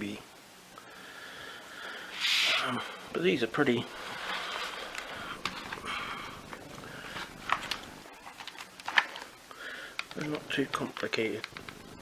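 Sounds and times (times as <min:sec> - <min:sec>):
rustling: 0:03.8 - 0:09.4.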